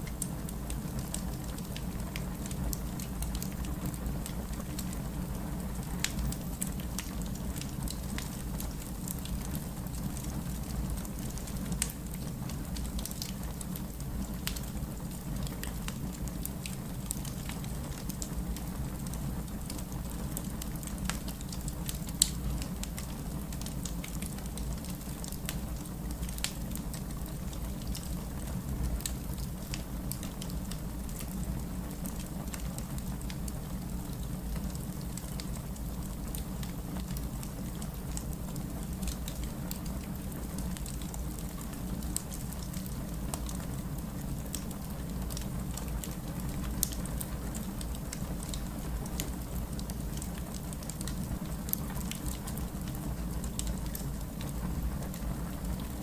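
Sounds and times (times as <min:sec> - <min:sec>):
fire snapping and popping: 0:00.0 - 0:56.0
low rumble of flames: 0:00.0 - 0:56.0.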